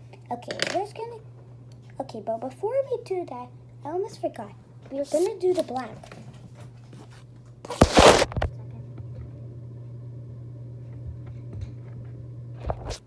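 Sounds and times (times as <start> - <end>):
rustling clatter of handling: 4.9 - 8.4.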